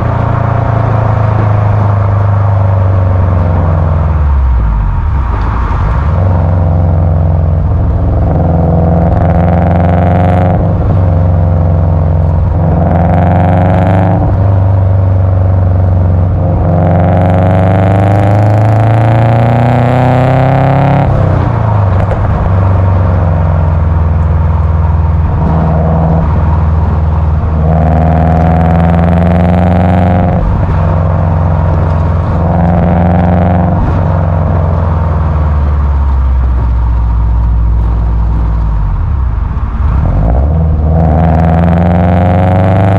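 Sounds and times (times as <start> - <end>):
car engine revving through exhaust: 0.0 - 42.9
exhaust crackles: 0.0 - 42.9.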